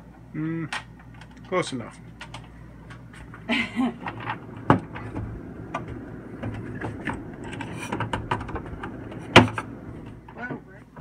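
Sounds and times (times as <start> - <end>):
low steady hum: 0.0 - 11.0
freezer parts clicking and knocking: 4.0 - 10.6.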